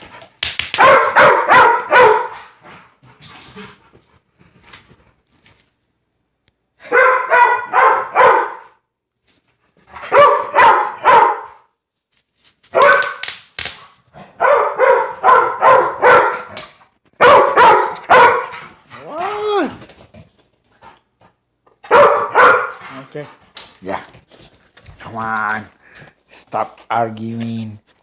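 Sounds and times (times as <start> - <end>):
dog barking: 0.8 - 2.4, 6.8 - 8.8, 10.1 - 11.7, 12.7 - 13.2, 14.4 - 16.6, 17.2 - 18.6, 21.9 - 23.0.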